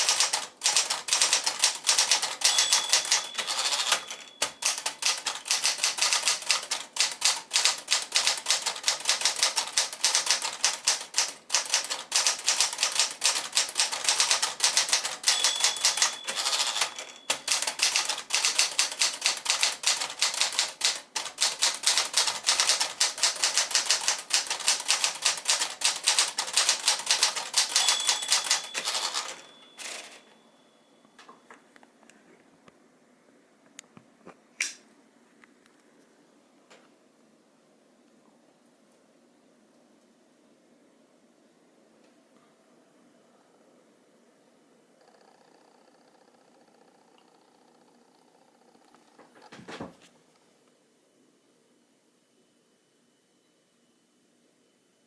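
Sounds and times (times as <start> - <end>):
typewriter key strikes: 0.0 - 30.1
typewriter bell ringing: 0.0 - 30.5.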